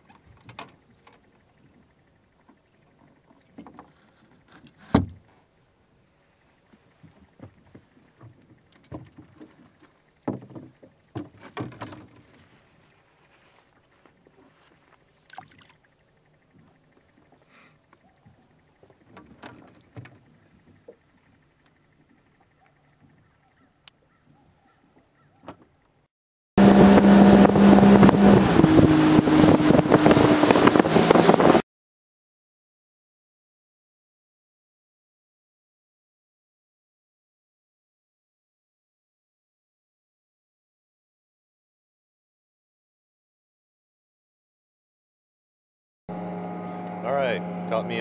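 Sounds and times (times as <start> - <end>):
outboard motor running: 0.0 - 24.8, 26.6 - 31.6, 46.1 - 48.0
knocks and bumps on a boat: 7.0 - 12.3
wind noise on microphone: 26.6 - 31.6.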